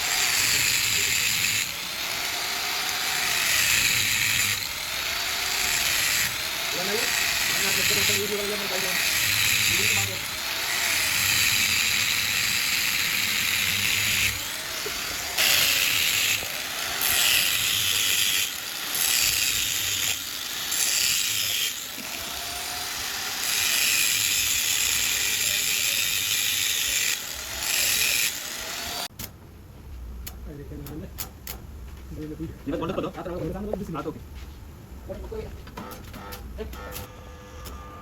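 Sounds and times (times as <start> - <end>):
rattling mechanical tool: 0.0 - 29.1.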